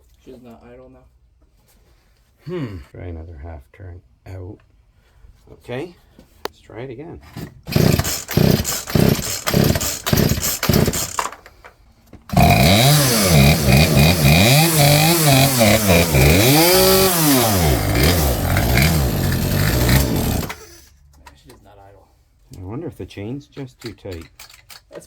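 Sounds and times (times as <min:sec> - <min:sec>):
chainsaw starting and revving: 0:07.7 - 0:11.4, 0:12.3 - 0:20.9.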